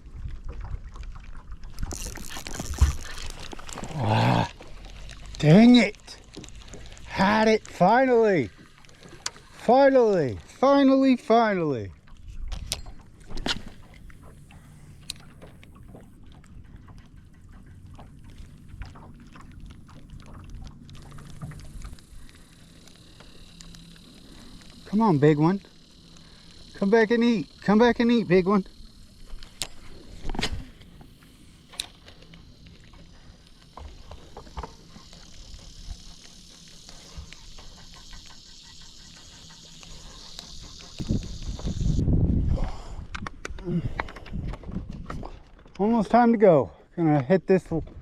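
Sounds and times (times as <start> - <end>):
boat low rumble: 0.0 - 48.0
faint steady hum: 1.5 - 44.5
light knocks and clicks from hull: 11.9 - 23.8, 31.7 - 35.2, 43.1 - 46.2
steady high hiss: 22.0 - 42.0.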